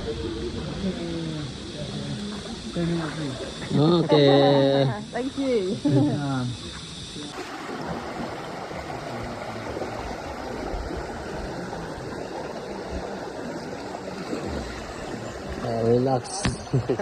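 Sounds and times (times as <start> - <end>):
stream water rushing: 7.3 - 17.0.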